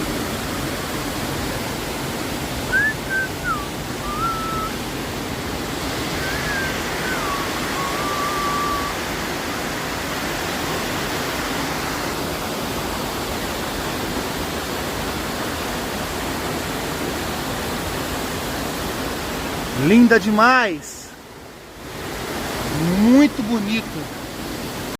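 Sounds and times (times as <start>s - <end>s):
steady rushing noise: 0.0s - 17.1s
thin whistled note: 2.7s - 4.8s, 6.2s - 9.0s.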